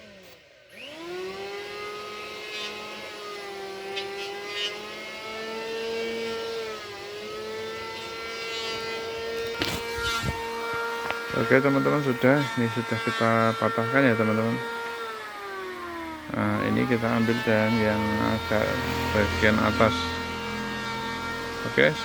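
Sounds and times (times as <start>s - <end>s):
motor engine running: 15.2s - 22.0s.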